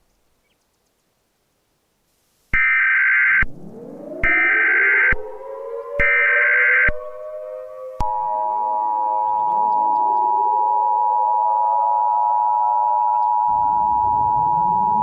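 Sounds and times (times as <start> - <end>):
lower tone gliding up: 3.5 - 15.0
screechy digital data tones: 8.8 - 15.0.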